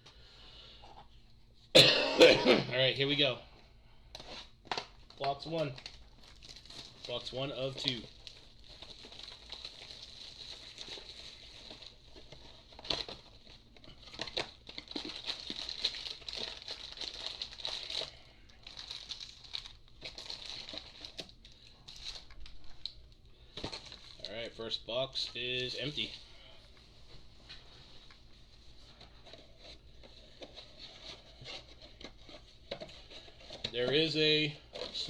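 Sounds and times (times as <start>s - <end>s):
plastic wrap tearing and crinkling: 4.7s - 24.3s.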